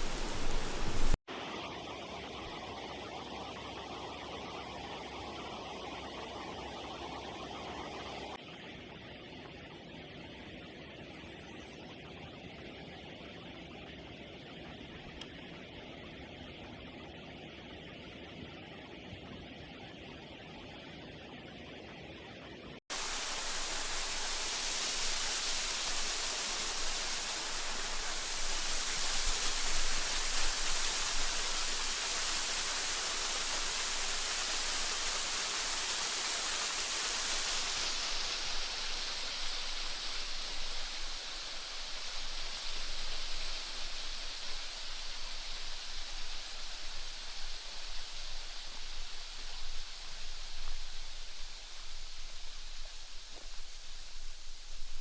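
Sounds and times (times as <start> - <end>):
mountain river rushing: 0.0 - 1.2, 22.9 - 54.1.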